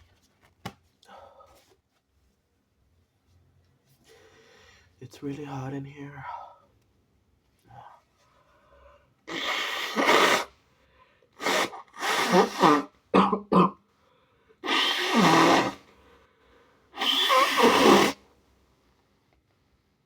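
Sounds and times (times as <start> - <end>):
person coughing: 12.4 - 13.8.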